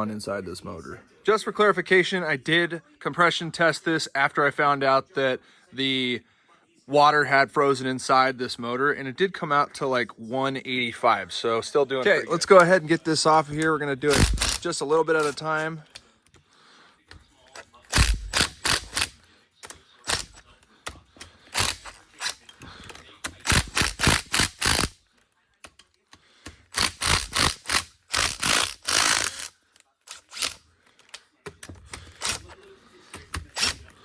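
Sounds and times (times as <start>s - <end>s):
ratchet wrench clicking: 14.1s - 14.6s, 17.9s - 25.0s, 25.6s - 32.6s, 33.2s - 33.9s.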